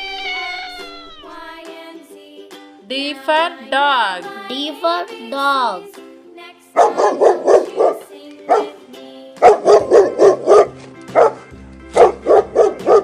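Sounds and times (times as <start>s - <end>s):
light background music: 0.0s - 13.0s
dog barking: 6.8s - 8.8s, 9.4s - 13.0s.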